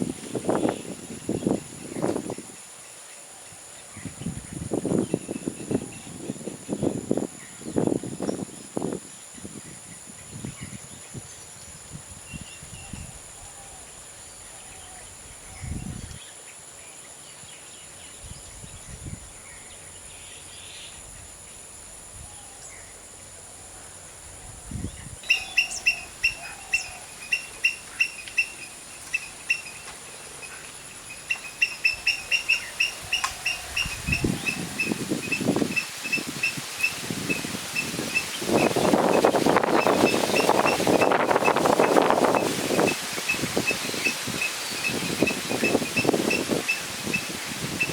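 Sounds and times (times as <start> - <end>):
birds: 0.0 - 9.3, 22.3 - 47.9.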